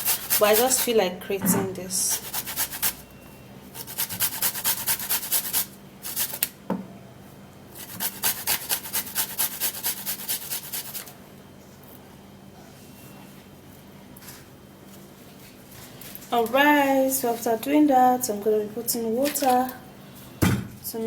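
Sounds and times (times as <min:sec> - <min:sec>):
ginger rasping on a grater: 0:00.0 - 0:01.0, 0:02.1 - 0:03.0, 0:03.8 - 0:06.4, 0:07.8 - 0:11.1.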